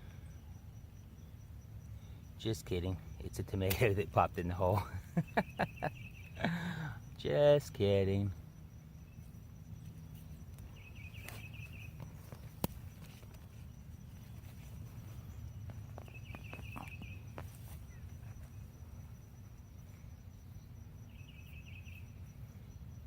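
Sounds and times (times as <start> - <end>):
digging in garden soil: 3.5 - 4.2, 9.9 - 18.7
insect buzzing trill: 5.1 - 23.0.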